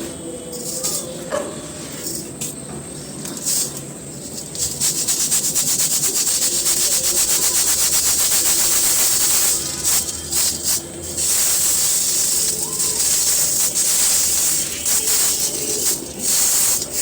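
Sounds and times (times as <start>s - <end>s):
chalky cones rubbed by hand: 4.4s - 17.0s.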